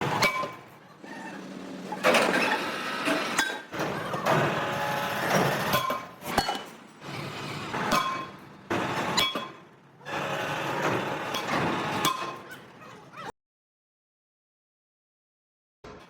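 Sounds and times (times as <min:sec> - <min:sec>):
scraping or grinding noise: 0:00.0 - 0:09.3.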